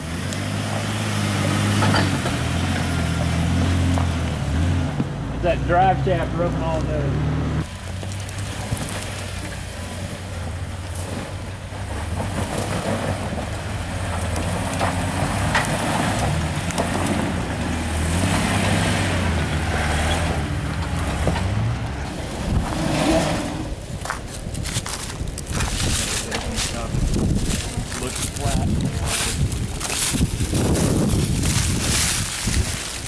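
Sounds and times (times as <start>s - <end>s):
off-road vehicle engine: 0.0s - 33.0s
knocks and scrapes: 0.6s - 5.1s, 10.9s - 33.0s.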